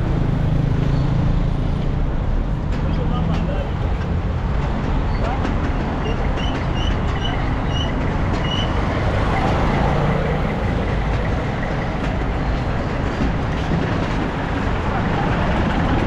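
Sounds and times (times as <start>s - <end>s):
traffic noise: 0.0s - 16.0s.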